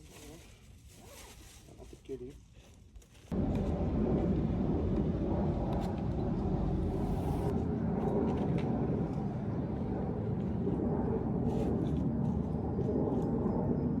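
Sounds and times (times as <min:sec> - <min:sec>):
vehicle low rumble: 0:03.3 - 0:14.0.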